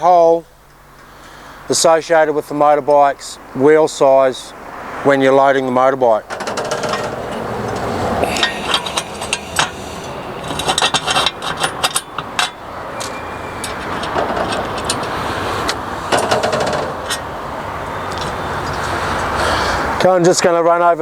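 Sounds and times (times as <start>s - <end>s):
outdoor background hiss: 0.0s - 21.0s
metal parts clanking and rattling: 6.3s - 17.4s.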